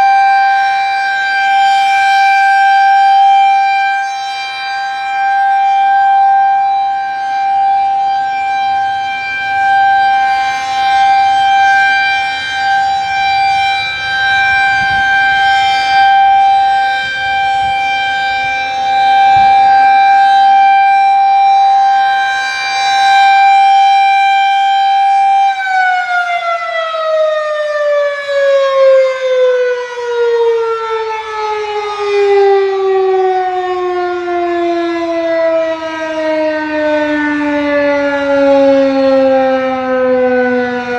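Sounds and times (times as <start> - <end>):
rotating siren wailing: 0.0 - 40.9.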